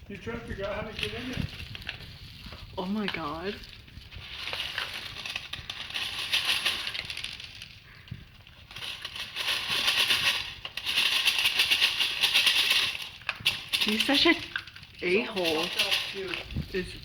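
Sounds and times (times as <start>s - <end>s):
kibble rattling in a bowl: 0.1s - 17.0s.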